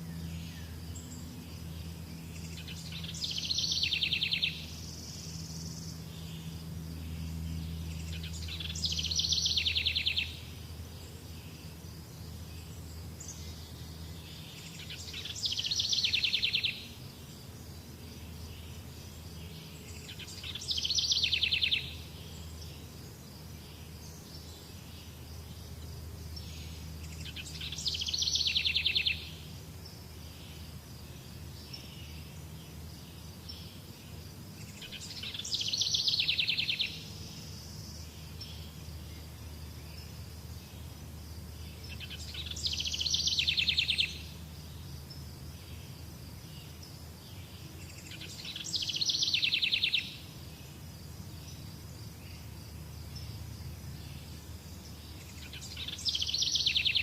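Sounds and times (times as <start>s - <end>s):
faint insect hum: 0.0s - 57.0s
songbird trilling: 2.0s - 10.6s, 13.2s - 17.0s, 19.8s - 22.7s, 26.4s - 29.5s, 34.6s - 38.8s, 41.7s - 44.4s, 47.8s - 50.3s, 55.1s - 57.0s.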